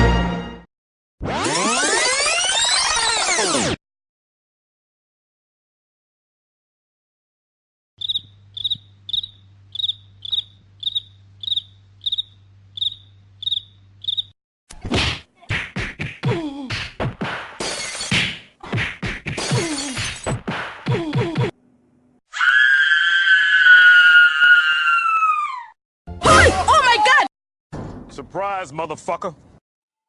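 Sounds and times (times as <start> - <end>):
cricket chirping: 8.0 - 14.4.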